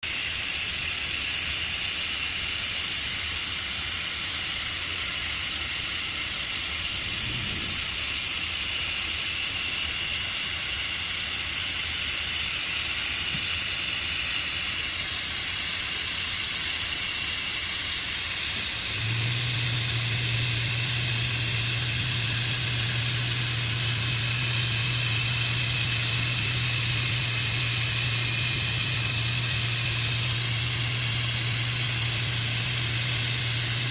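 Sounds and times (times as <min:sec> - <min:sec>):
welding arc hiss: 0:00.0 - 0:33.9
low steady hum: 0:06.9 - 0:08.1.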